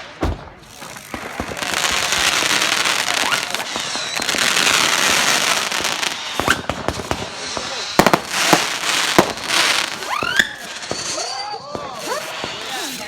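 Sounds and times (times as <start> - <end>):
fireworks crackling: 0.0 - 13.0
firework thump: 0.2 - 2.3
rising firework whistles: 0.7 - 13.0.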